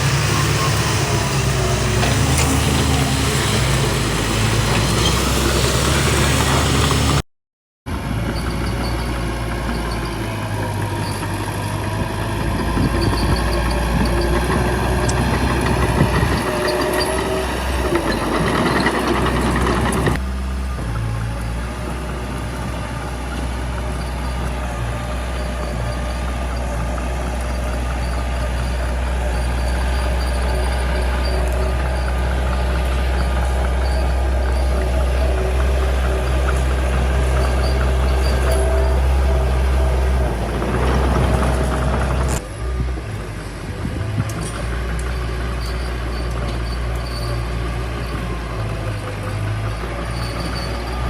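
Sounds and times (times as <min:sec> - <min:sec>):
bulldozer diesel engine running: 0:00.0 - 0:07.2, 0:07.9 - 0:51.0
machine clanking and knocking: 0:12.5 - 0:20.2, 0:40.4 - 0:42.4.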